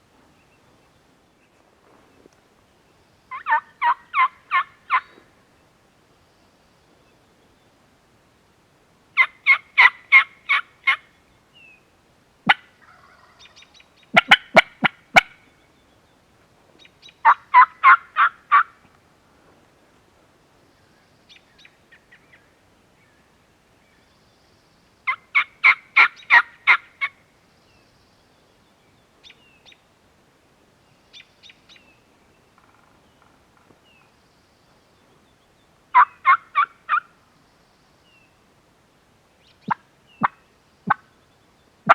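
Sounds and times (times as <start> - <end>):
turkey yelping: 3.3 - 5.2, 9.2 - 11.0, 14.2 - 15.4, 17.2 - 18.8, 25.1 - 26.9, 35.9 - 37.1.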